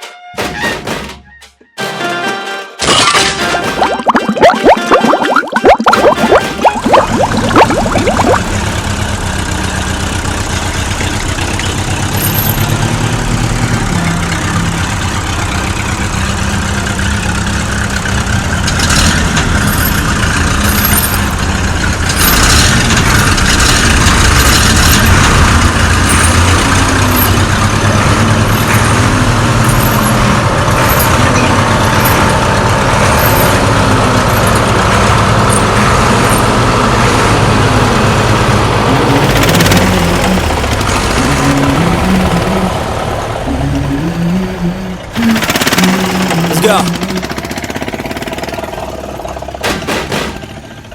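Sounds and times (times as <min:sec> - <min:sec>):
wavering tone: 0:03.7 - 0:08.5
vehicle engine rumble: 0:05.7 - 0:50.9.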